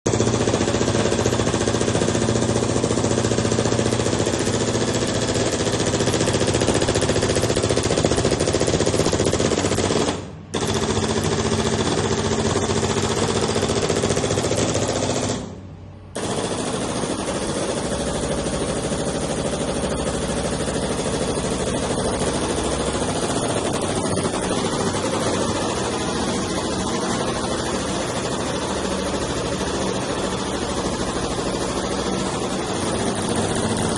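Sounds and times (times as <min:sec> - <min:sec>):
steady machine hum: 0:00.1 - 0:33.9.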